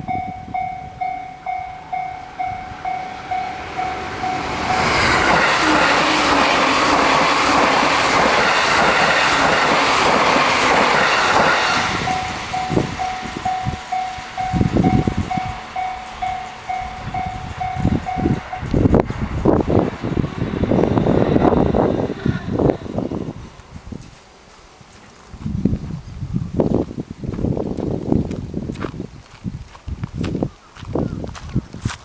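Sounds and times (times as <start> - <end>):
level crossing bell dinging: 0.0 - 5.2, 12.0 - 18.8
train passing with wheel clatter: 0.0 - 26.2.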